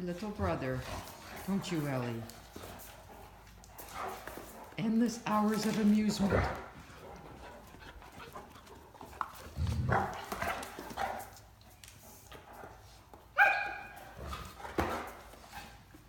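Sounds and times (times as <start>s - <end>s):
dogs scuffling: 0.0s - 16.0s
sharp high dog bark: 13.4s - 13.9s.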